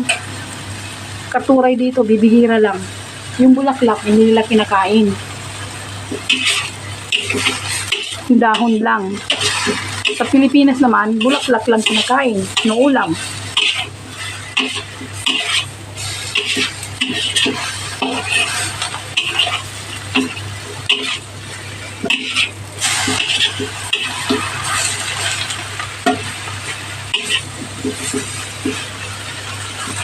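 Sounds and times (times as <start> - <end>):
leaves sizzling in a pan: 0.0 - 30.0
utensil scraping a pan: 6.2 - 30.0.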